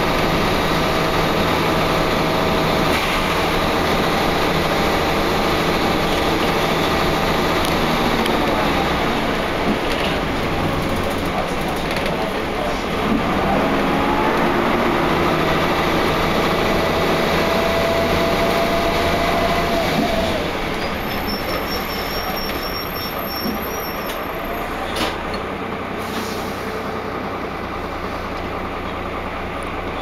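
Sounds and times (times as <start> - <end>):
bus drive-train drone: 0.0 - 30.0.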